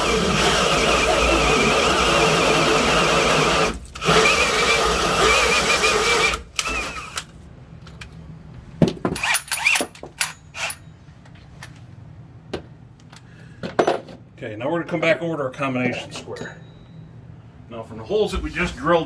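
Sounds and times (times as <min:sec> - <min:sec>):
power drill hole saw cutting wood: 0:00.0 - 0:07.2.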